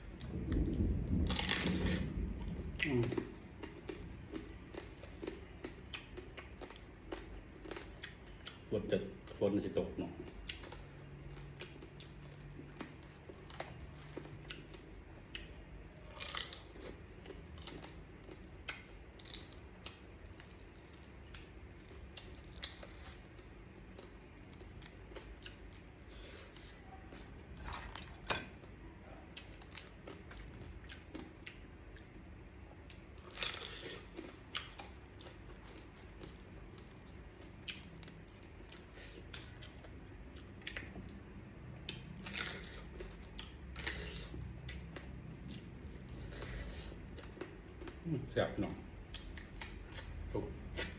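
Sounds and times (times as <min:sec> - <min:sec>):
chewing: 0:01.3 - 0:09.4, 0:10.2 - 0:32.1, 0:41.8 - 0:48.3, 0:48.9 - 0:50.9.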